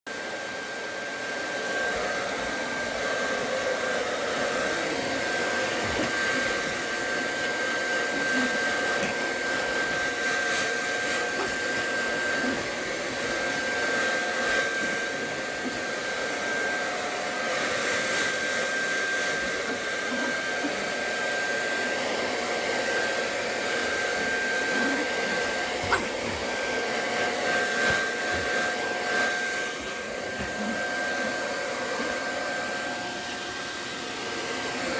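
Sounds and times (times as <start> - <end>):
hair dryer running: 0.1 - 34.9.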